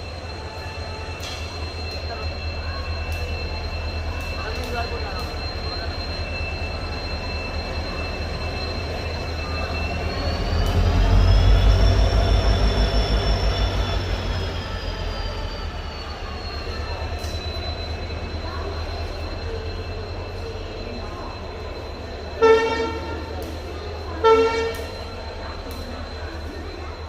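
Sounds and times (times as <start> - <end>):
diesel locomotive engine rumble: 0.0 - 27.0
high engine whine: 0.0 - 27.0
locomotive horn: 22.4 - 23.3, 24.2 - 25.1.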